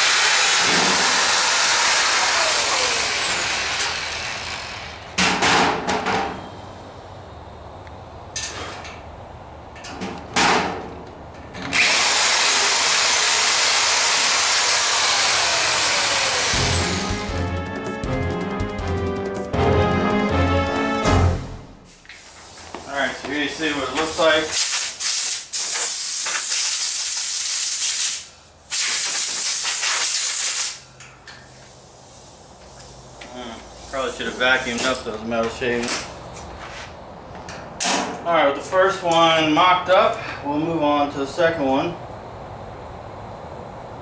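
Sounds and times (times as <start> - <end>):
electric drill boring into metal: 0.0 - 5.1, 11.7 - 17.4.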